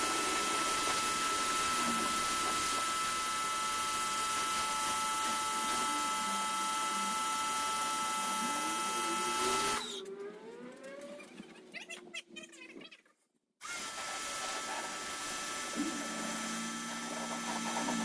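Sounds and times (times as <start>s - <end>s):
machine hiss with high whine: 0.0s - 10.0s, 16.0s - 18.0s.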